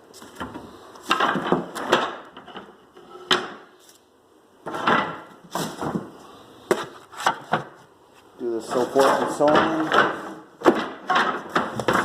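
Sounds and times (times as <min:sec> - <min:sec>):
wooden floorboards knocking: 0:09.2 - 0:12.0.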